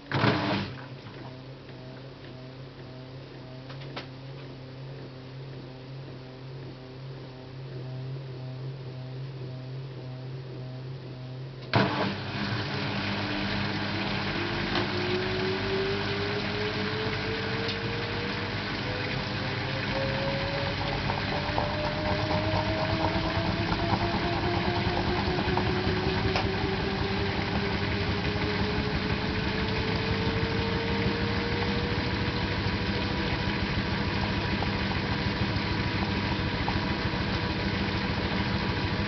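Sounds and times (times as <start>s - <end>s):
washing machine humming and spinning: 0.0s - 39.0s.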